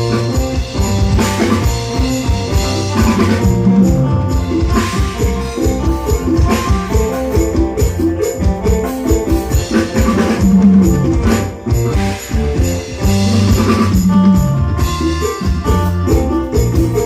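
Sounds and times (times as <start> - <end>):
drums and percussion beat: 0.0 - 17.0.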